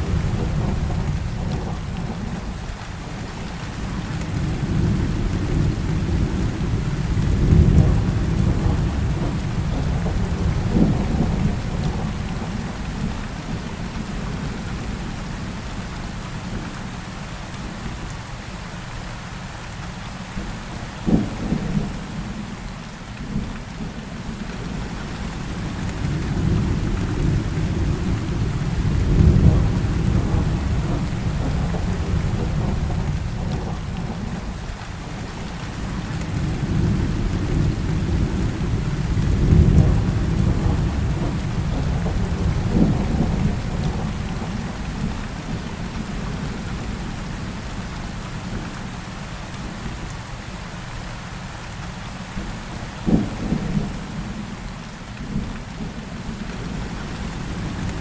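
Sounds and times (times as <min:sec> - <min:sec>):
heavy rain falling: 0:00.0 - 0:58.0
rolling thunder: 0:03.9 - 0:13.6, 0:24.7 - 0:47.2.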